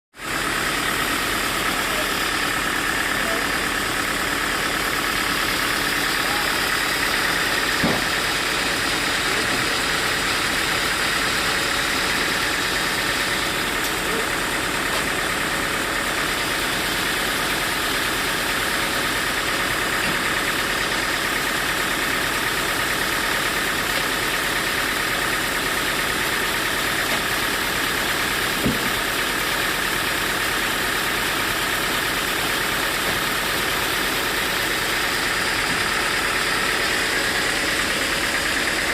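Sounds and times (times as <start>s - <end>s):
sawmill machinery running: 0.2s - 38.9s
sharp knock: 7.8s - 8.2s.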